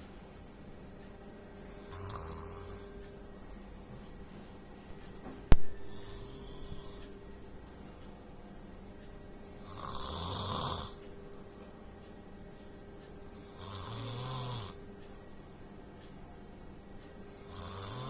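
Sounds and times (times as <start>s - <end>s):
person snoring: 1.7s - 2.8s, 5.9s - 7.1s, 9.6s - 11.0s, 13.4s - 14.8s, 17.3s - 18.0s.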